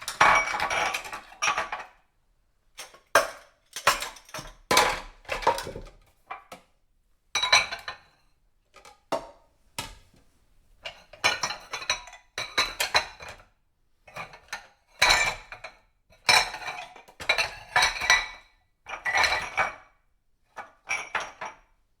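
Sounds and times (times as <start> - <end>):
dishes and cutlery clinking: 0.0 - 2.0.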